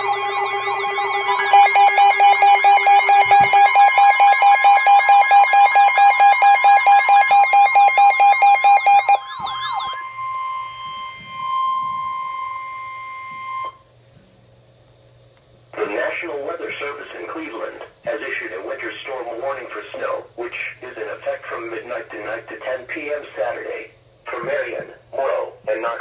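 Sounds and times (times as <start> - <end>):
pulsing buzzy electronic alarm: 0.0 - 13.9.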